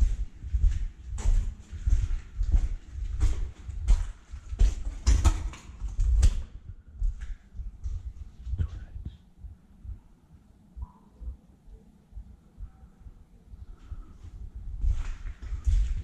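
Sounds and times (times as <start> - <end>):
footsteps with gritty scrape: 0.0 - 8.5, 14.7 - 16.0.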